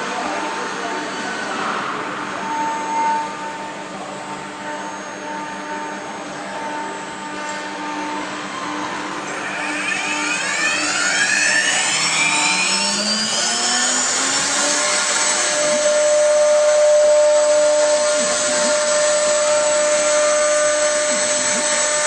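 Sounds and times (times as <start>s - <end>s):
machine noise: 0.0s - 22.0s
router spindle whining: 0.0s - 22.0s
tones sweeping upward in pitch: 9.4s - 22.0s.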